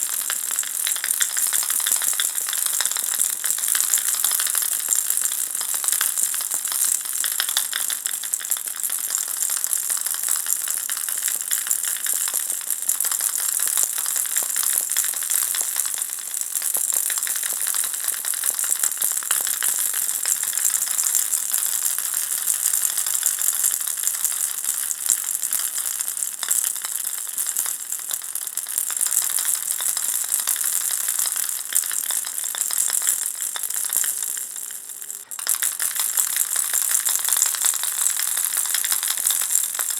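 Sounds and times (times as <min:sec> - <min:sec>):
baby rattle shaking: 0:00.0 - 0:09.5, 0:28.9 - 0:39.9.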